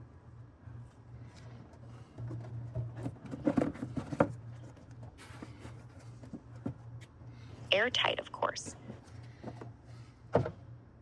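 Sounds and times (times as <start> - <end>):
steady low hum: 0.0 - 11.0
knocks and scrapes: 2.0 - 7.0.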